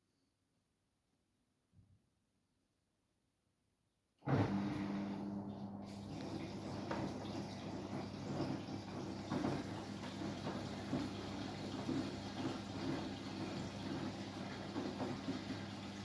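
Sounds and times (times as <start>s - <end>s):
washing machine low hum: 4.2s - 16.0s
water sloshing in washing machine: 4.3s - 16.0s.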